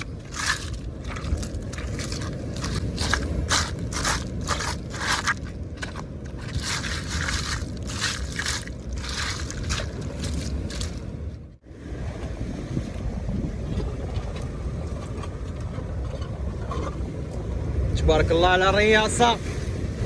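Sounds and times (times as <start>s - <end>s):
scraping crunching strokes: 0.0s - 11.2s
wind and sea rumble: 0.0s - 20.0s.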